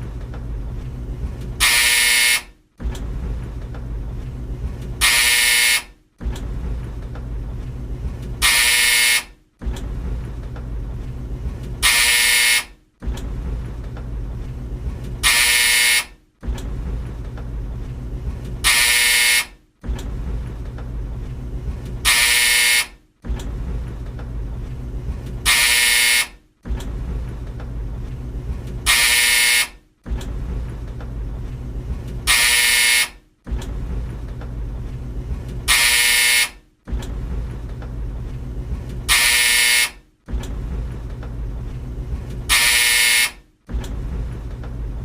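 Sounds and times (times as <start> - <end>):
tumble dryer rumbling: 0.0 - 36.0, 36.7 - 45.0
dryer buzzer: 1.6 - 2.6, 5.0 - 6.3, 8.4 - 9.4, 11.8 - 12.8, 15.2 - 16.2, 18.6 - 19.6, 22.0 - 23.0, 25.4 - 26.4, 28.8 - 29.8, 32.2 - 33.3, 35.6 - 36.7, 39.0 - 40.1, 42.5 - 43.8.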